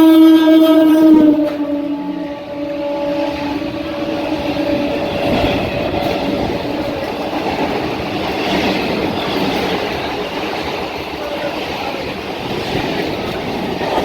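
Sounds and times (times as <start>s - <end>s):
train horn: 0.0s - 9.4s
train wheels clattering: 0.0s - 14.0s.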